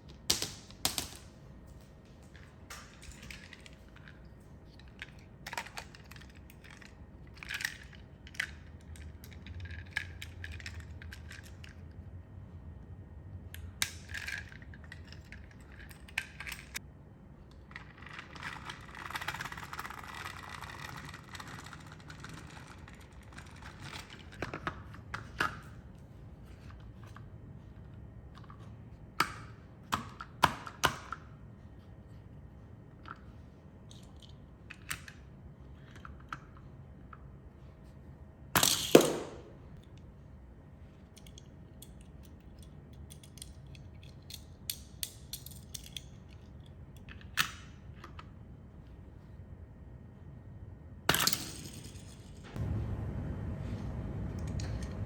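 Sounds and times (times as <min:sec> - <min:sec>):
objects clattering: 0:00.1 - 0:11.7.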